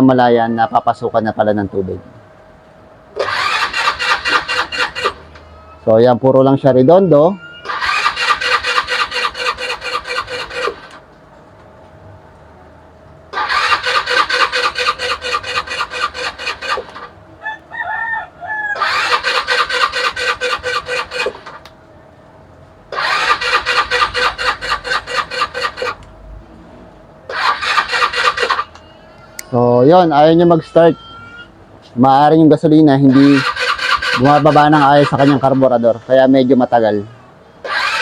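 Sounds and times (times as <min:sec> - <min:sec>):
motorcycle engine cranking: 0:03.2 - 0:05.4, 0:07.7 - 0:11.0, 0:13.3 - 0:17.1, 0:18.8 - 0:21.6, 0:22.9 - 0:26.1, 0:27.3 - 0:28.8, 0:33.1 - 0:35.8, 0:37.6 - 0:38.0.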